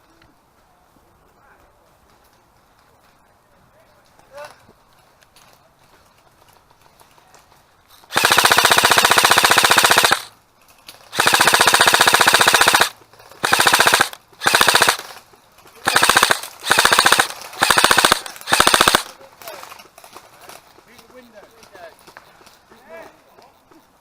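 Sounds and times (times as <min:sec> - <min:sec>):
airsoft gun firing bursts: 0:08.1 - 0:10.3, 0:11.1 - 0:15.2, 0:15.8 - 0:19.2.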